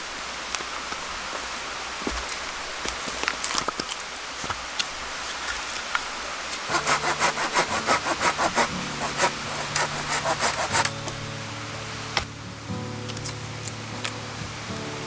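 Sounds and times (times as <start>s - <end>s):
hand saw cutting wood: 6.6s - 11.1s.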